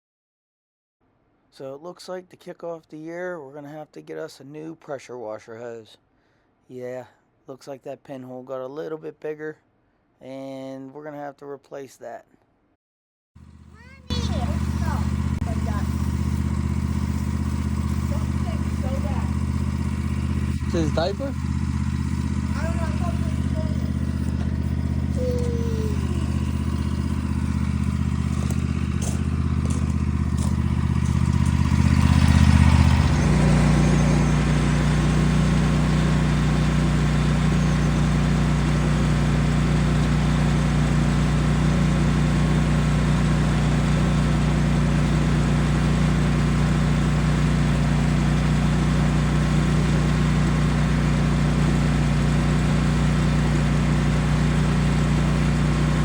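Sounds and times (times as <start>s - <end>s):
small gasoline engine running: 13.4s - 56.0s.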